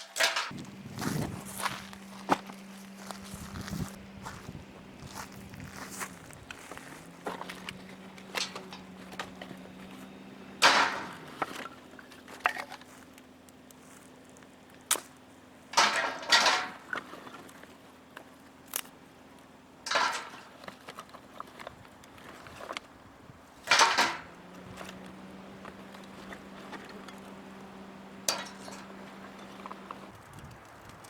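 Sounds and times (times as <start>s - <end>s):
rustling and scraping: 0.0s - 13.2s, 19.9s - 23.0s, 23.6s - 31.0s
light clicks and knocks: 0.4s - 11.7s.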